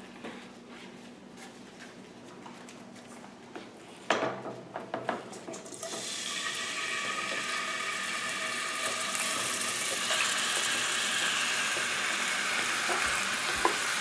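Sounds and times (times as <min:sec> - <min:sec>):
chicken sizzling in oil: 0:05.7 - 0:14.0.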